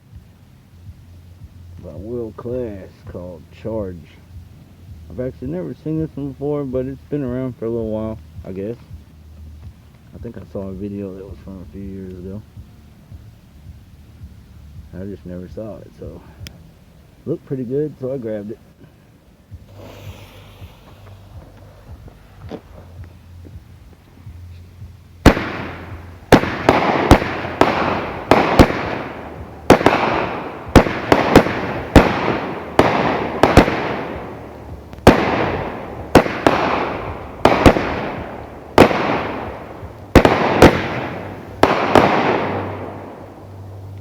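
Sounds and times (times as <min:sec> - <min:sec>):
fireworks bangs with echoing rumble: 0:25.2 - 0:44.0.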